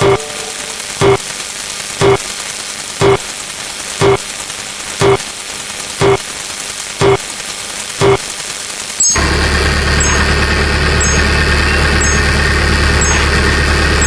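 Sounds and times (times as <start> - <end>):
steady hiss: 0.0 - 9.1.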